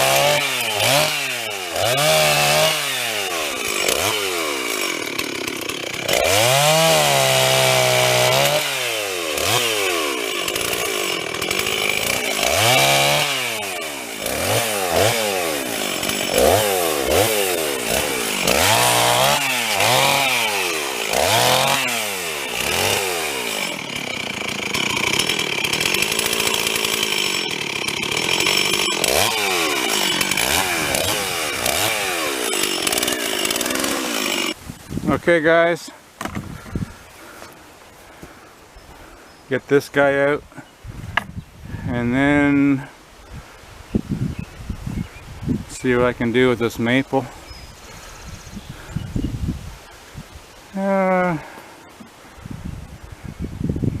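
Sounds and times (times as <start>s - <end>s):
chainsaw revving cutting wood: 0.0s - 34.6s.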